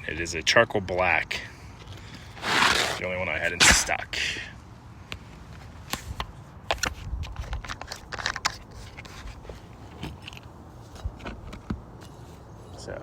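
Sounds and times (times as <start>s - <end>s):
clicks and scrapes on roof shingles: 2.0s - 3.0s.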